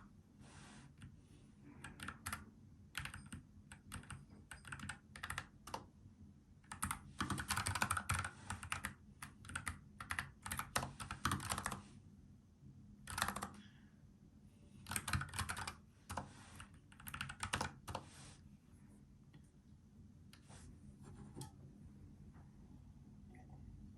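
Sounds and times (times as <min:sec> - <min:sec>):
typing on mechanical keyboard: 0:01.8 - 0:05.9, 0:06.7 - 0:11.8, 0:13.1 - 0:13.6, 0:14.8 - 0:18.0.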